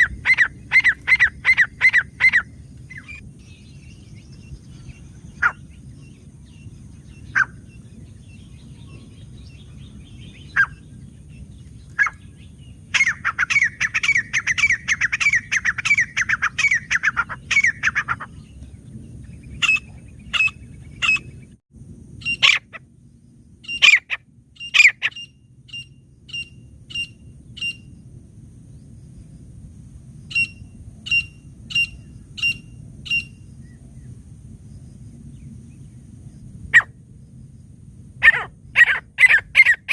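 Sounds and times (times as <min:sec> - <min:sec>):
francolin calling: 0:00.0 - 0:18.5, 0:19.5 - 0:21.4, 0:22.2 - 0:22.9, 0:23.6 - 0:27.9, 0:30.3 - 0:33.8, 0:38.2 - 0:39.9.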